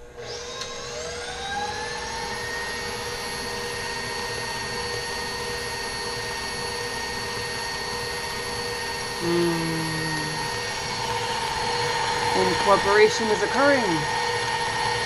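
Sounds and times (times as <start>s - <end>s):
stand mixer motor whine: 0.0s - 9.3s, 10.0s - 15.0s
brief low hum: 9.2s - 10.6s.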